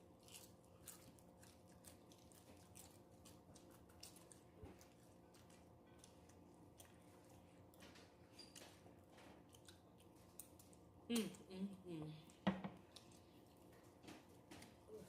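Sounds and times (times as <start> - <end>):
chewing crunchy chips: 0.0 - 11.2.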